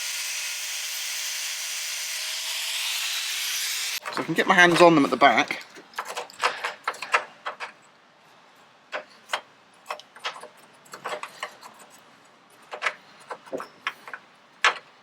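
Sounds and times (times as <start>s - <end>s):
metallic clicks of hinge bolts: 12.6s - 14.9s.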